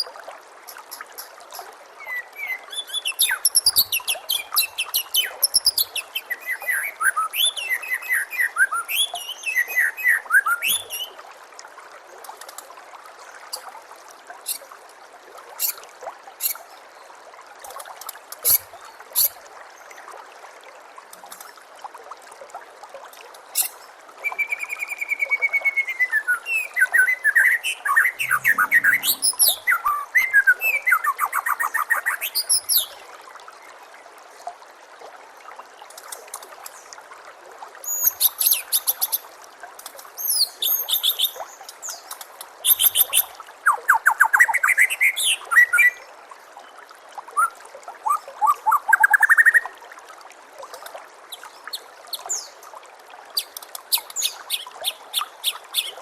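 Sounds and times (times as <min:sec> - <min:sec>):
trickle of water: 0:00.0 - 0:56.0
bird singing whistled phrases and trills: 0:02.0 - 0:11.1, 0:24.3 - 0:32.9.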